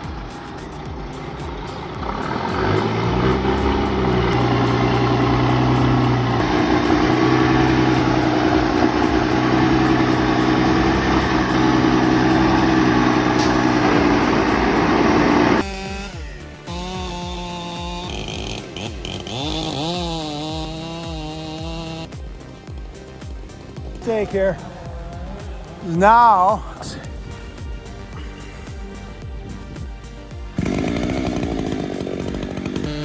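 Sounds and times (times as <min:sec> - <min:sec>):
heavy vehicle engine revving: 0:00.0 - 0:25.8, 0:26.8 - 0:33.0.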